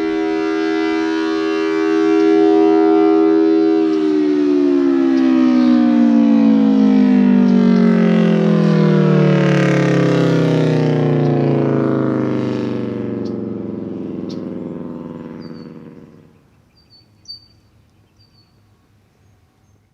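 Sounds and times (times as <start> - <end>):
siren winding down: 0.0 - 16.5
birds chirping: 7.2 - 8.4, 12.2 - 19.9.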